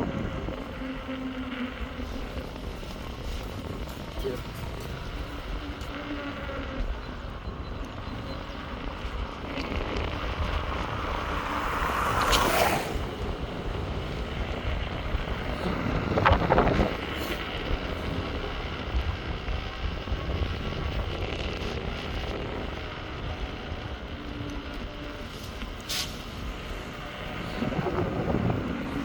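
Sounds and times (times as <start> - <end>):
road noise: 0.0 - 29.0
wind rush on microphone: 0.0 - 29.0
whooshes: 11.4 - 13.3.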